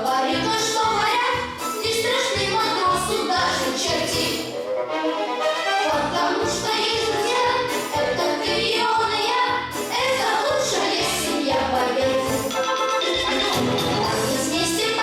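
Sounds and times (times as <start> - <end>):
song with singing voice: 0.0 - 4.7, 5.3 - 15.0.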